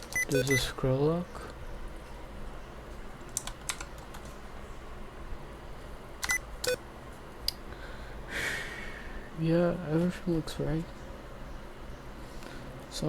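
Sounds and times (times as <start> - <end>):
keyboard key clicks: 6.2 - 6.8.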